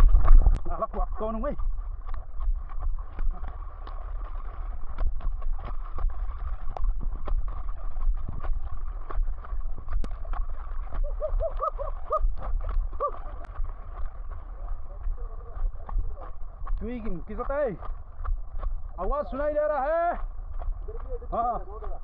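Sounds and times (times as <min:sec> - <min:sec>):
wind buffeting microphone: 0:00.0 - 0:22.0.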